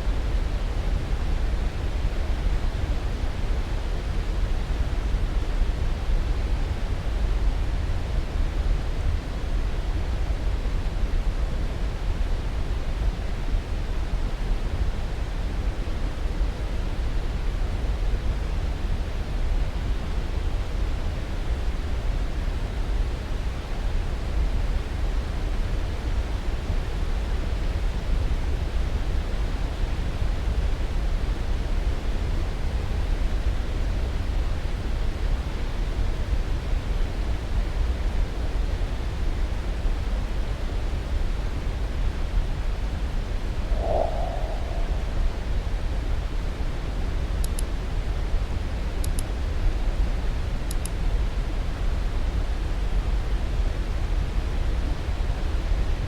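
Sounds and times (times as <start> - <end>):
white noise: 18.2 - 56.0.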